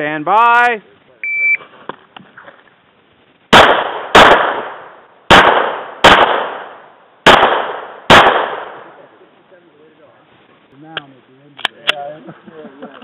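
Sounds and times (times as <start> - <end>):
handgun shots echoing: 3.5 - 8.9.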